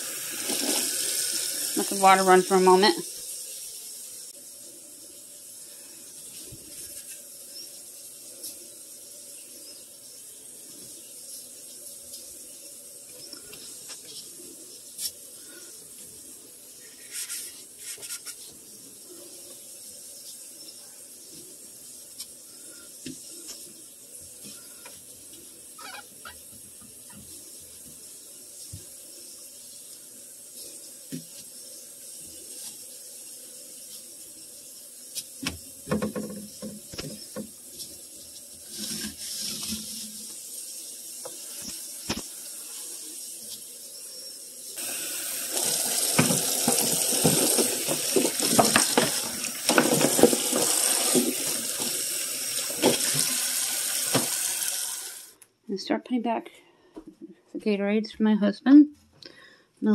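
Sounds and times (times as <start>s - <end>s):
tap water splashing on plastic: 35.2s - 37.5s, 45.6s - 52.0s, 52.6s - 53.4s, 54.0s - 54.5s.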